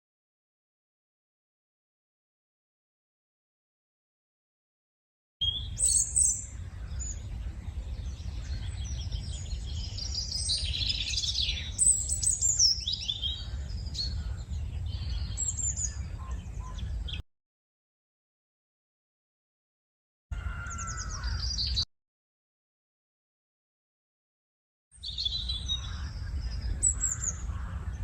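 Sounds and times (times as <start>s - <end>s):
birds chirping and trilling: 5.4s - 17.2s, 20.3s - 21.9s, 24.9s - 28.0s
low steady rumble: 5.5s - 17.2s.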